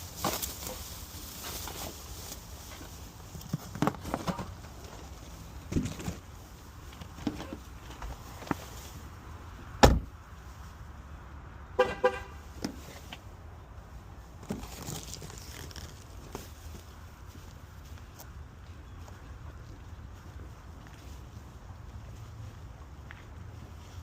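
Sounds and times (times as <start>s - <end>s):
car door shutting: 9.8s - 10.1s
car horn chirps: 11.8s - 12.4s.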